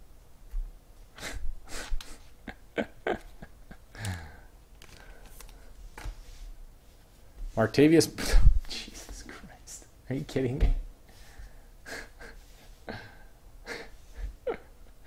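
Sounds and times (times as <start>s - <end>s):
cards and wrappers rustling: 4.0s - 6.1s.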